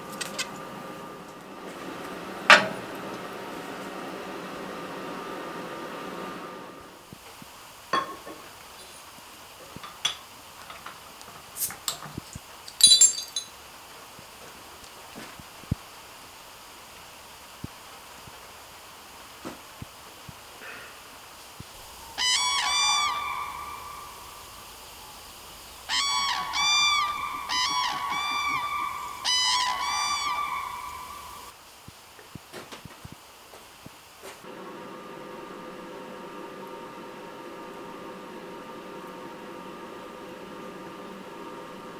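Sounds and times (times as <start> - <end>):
glass bottle clinking: 8.0 - 8.4, 12.7 - 13.6
geese honking: 22.0 - 25.2, 25.8 - 31.5.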